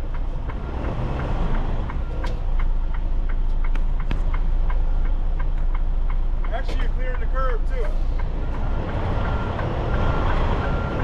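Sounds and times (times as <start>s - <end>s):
regular light ticking: 0.0s - 11.0s
truck diesel engine rumbling: 0.0s - 11.0s.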